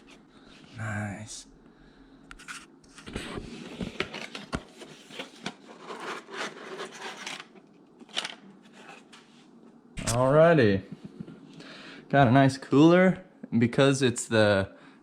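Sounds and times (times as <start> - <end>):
packaging rustling and scraping: 2.4 - 9.3.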